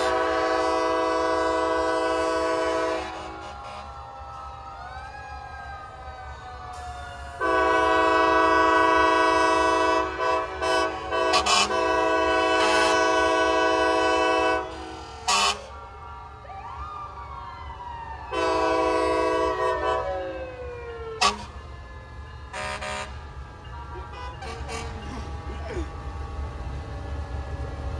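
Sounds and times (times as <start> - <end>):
air horn chord: 0.0 - 3.8
siren winding down: 14.7 - 27.9.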